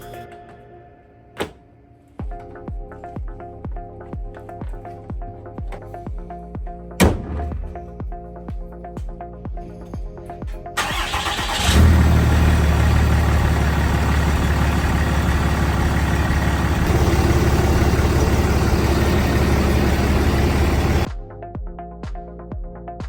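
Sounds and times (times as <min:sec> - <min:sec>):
pickup engine starting and idling: 0:10.8 - 0:21.1.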